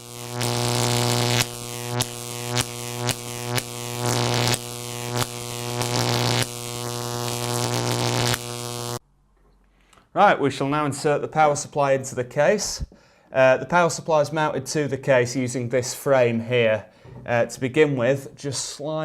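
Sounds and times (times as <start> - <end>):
buzzy synthesizer drone: 0.0 - 9.0.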